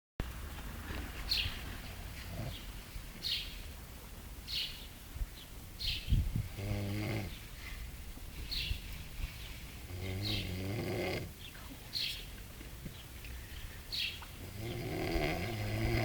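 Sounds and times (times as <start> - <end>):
buzzing snore: 6.4 - 7.4, 9.9 - 11.3, 14.4 - 16.0.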